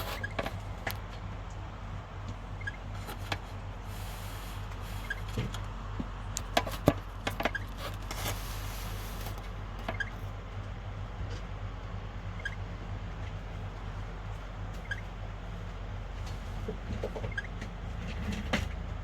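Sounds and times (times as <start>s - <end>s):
fan squeak: 0.0s - 1.3s, 2.4s - 5.8s, 6.4s - 10.4s, 12.2s - 12.8s, 14.6s - 15.3s, 16.6s - 18.5s
fan clicks: 0.0s - 3.6s, 5.2s - 8.4s
fan motor hum: 0.0s - 19.0s.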